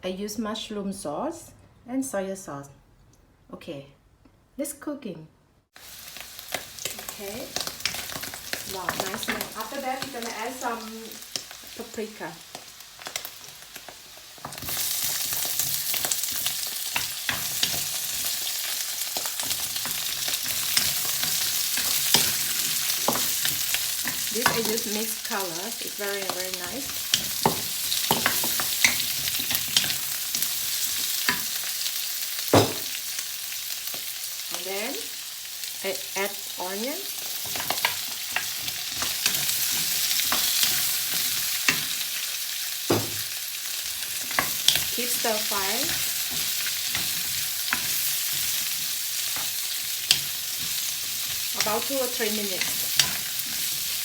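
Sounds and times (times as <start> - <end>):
food sizzling in hot oil: 5.7 - 54.0
spatula scraping and tapping pan: 19.2 - 24.9, 26.2 - 31.6, 45.7 - 51.9, 52.5 - 54.0.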